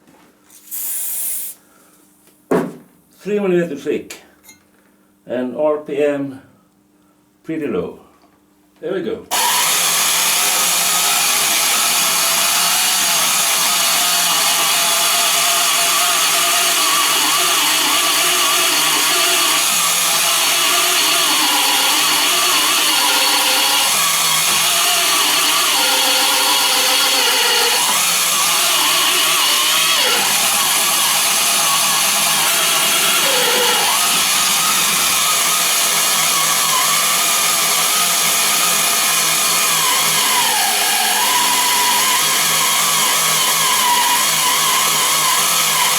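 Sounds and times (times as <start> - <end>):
hole saw cutting steel sheet: 9.3 - 45.9.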